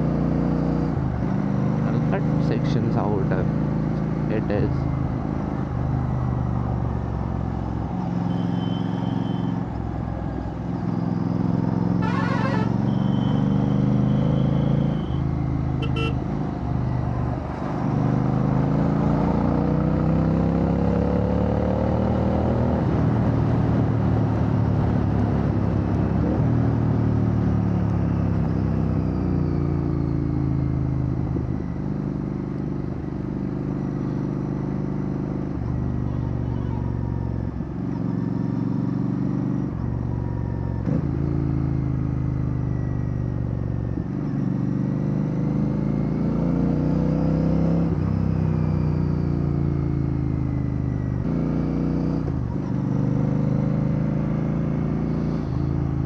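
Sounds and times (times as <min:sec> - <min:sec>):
vehicle horns tooting: 0:08.3 - 0:09.6, 0:12.0 - 0:15.2, 0:15.8 - 0:16.2
motorcycle engine revving: 0:40.2 - 0:56.0.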